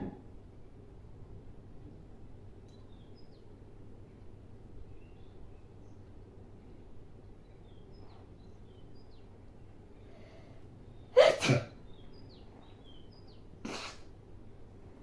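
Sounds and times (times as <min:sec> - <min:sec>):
woman sneezing: 0:11.2 - 0:11.7, 0:13.7 - 0:14.1.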